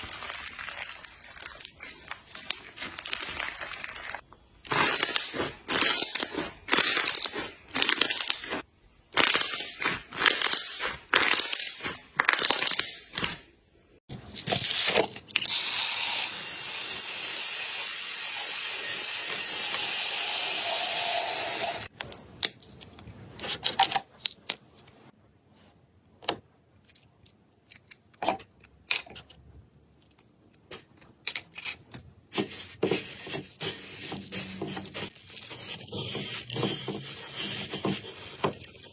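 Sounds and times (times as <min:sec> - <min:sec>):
slime squishing and crackling: 0:00.0 - 0:13.4.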